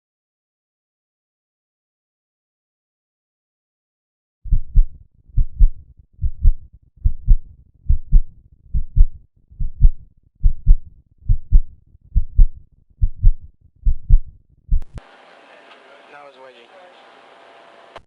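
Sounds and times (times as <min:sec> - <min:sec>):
heartbeat thumps: 0:04.5 - 0:15.0.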